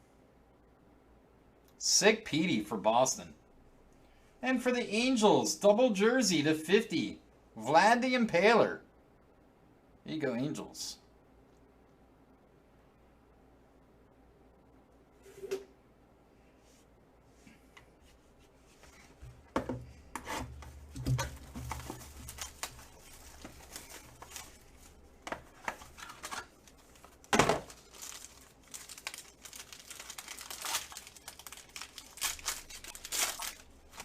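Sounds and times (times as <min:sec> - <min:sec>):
cards rustling and tapping: 0:18.8 - 0:28.3
wrapper tearing and crinkling: 0:21.0 - 0:34.0.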